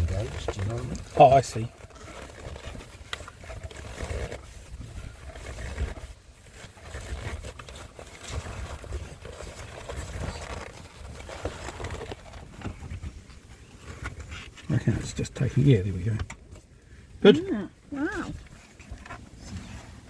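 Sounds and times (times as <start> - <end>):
handling rumbling and rustling: 0.0 - 20.0.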